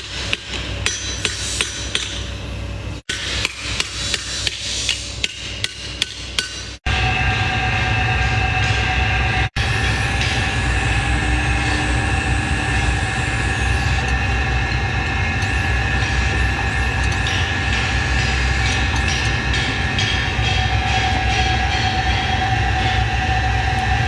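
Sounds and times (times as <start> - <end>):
machine rumbling and whining: 6.8 - 24.0.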